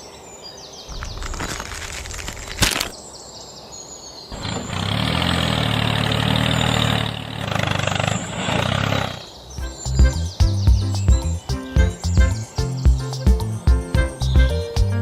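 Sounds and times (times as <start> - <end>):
engine humming: 4.3 - 14.6.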